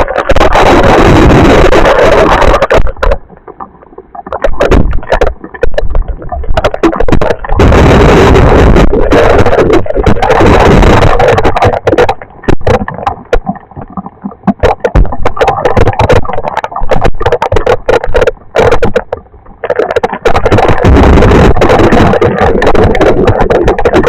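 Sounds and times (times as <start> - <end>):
rushing wind: 0.0 - 3.3, 4.4 - 12.9, 19.9 - 24.0.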